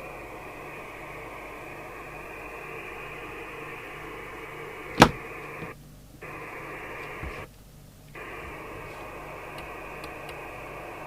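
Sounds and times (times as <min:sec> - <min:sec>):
radio static hiss: 0:00.3 - 0:07.5, 0:08.1 - 0:11.0.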